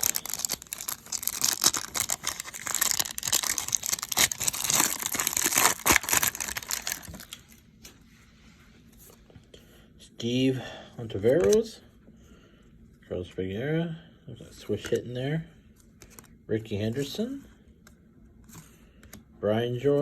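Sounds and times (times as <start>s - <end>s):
wrapper tearing and crinkling: 0.0s - 7.6s.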